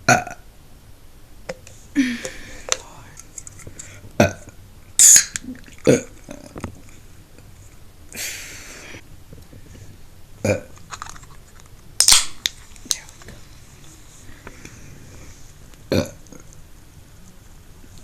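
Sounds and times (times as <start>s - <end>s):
woman burping: 0.0s - 0.4s, 2.0s - 2.8s, 4.2s - 6.5s, 10.4s - 10.7s, 15.9s - 16.2s
breathy hiss: 1.7s - 4.2s, 8.1s - 10.1s, 12.8s - 15.7s.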